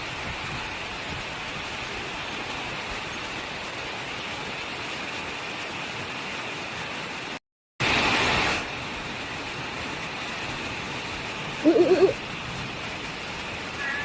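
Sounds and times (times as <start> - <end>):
steady outdoor hiss: 8.5 - 14.0.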